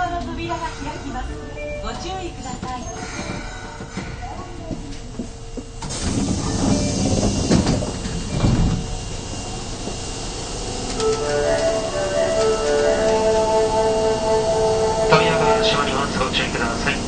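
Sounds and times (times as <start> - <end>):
subway doors sliding open: 0.0 - 17.0
door mechanism hiss and rumble: 3.0 - 12.4
melodic stepped chime: 11.0 - 16.2.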